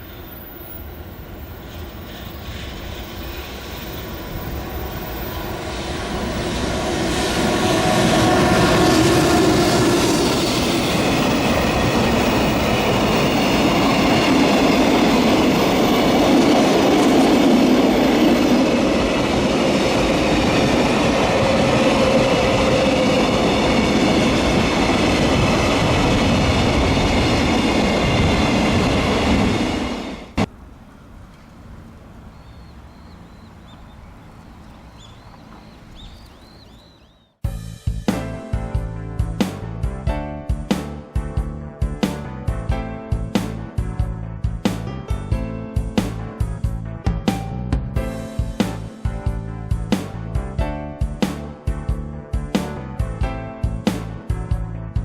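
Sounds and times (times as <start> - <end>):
wheels clattering on rails: 0.0 - 37.1
freight train passing: 0.0 - 37.4.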